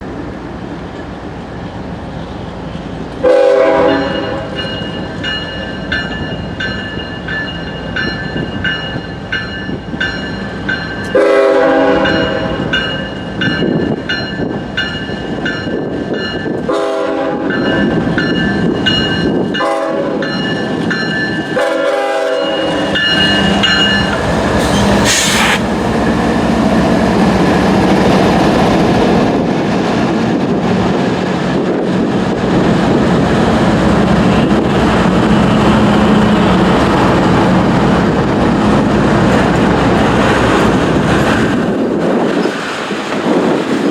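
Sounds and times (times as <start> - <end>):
train rumble and wheel clatter: 0.0 - 43.9
locomotive air horn: 3.2 - 4.6, 11.1 - 12.7, 16.7 - 17.6, 19.6 - 20.2, 21.5 - 22.9, 24.6 - 25.6.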